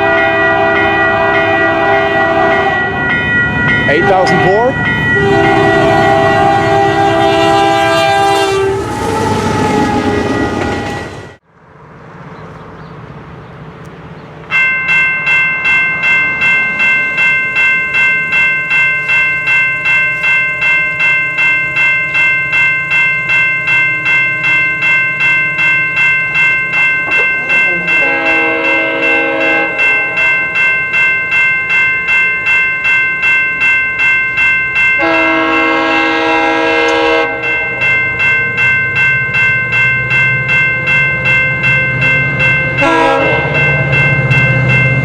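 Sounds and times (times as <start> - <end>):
locomotive horn chord: 0.0 - 3.1, 3.9 - 11.4, 27.1 - 30.5, 35.0 - 37.6, 42.6 - 44.2
passing train rumble: 0.0 - 45.0
bell ringing: 2.8 - 7.5, 14.5 - 45.0.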